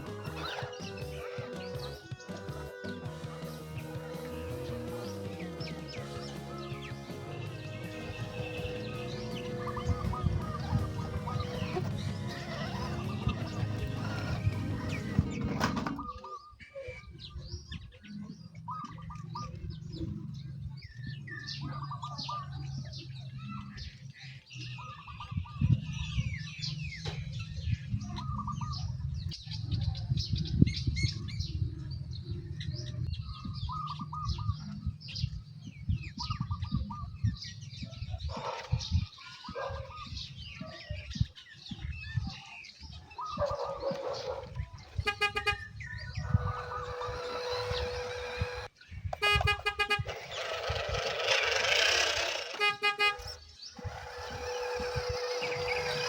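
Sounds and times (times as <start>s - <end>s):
small birds chirping: 0.0s - 56.0s
horn-like toot: 45.0s - 50.8s, 52.1s - 56.0s.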